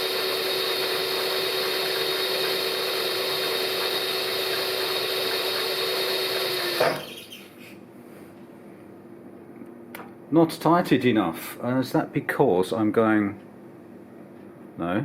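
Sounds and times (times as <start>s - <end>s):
milling machine spindle whine: 0.0s - 7.4s.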